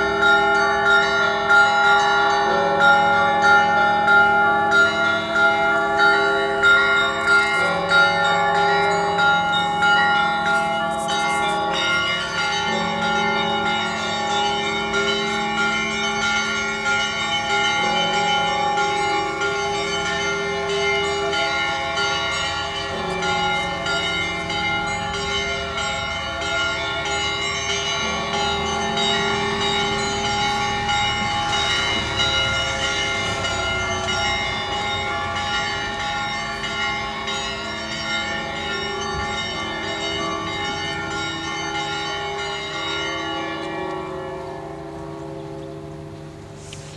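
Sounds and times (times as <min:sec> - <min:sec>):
church bells pealing: 0:00.0 - 0:46.9.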